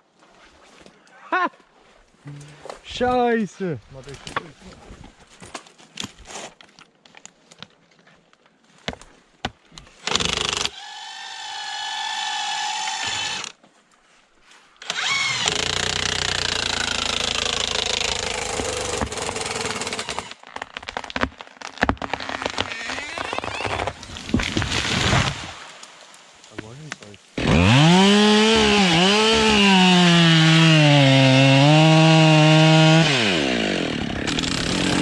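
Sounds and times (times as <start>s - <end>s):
chainsaw engine revving: 10.1s - 13.5s, 14.8s - 20.4s, 27.4s - 35.0s
knocks and clicks: 34.3s - 35.0s.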